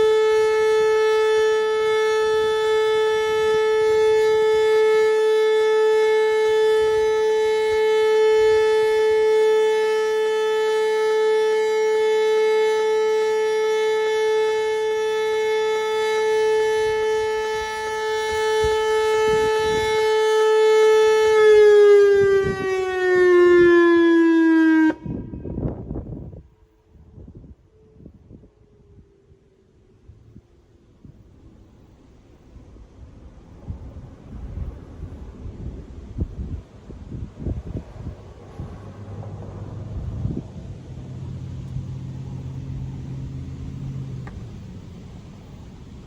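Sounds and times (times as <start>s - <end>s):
electronic warning siren tone: 0.0s - 26.4s.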